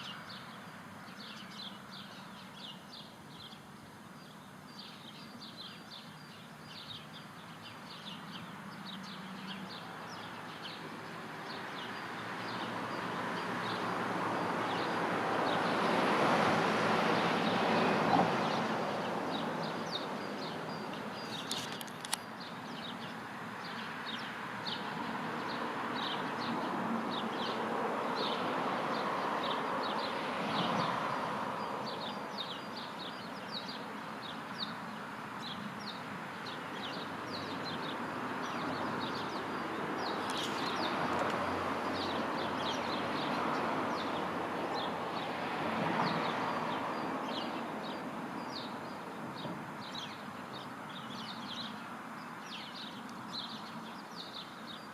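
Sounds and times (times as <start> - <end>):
road traffic passing: 0.0 - 54.9
bird chirps: 19.3 - 24.9.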